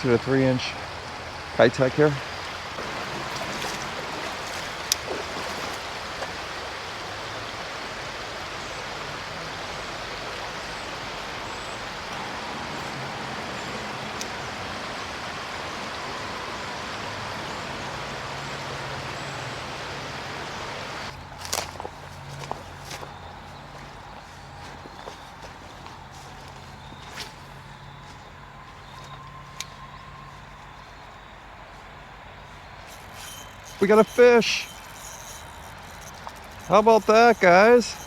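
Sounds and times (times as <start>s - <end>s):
creek water rushing: 0.0s - 21.1s, 32.8s - 38.0s.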